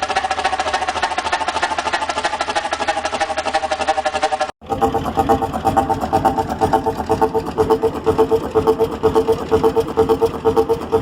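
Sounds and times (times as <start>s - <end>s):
large engine running: 0.0s - 11.0s.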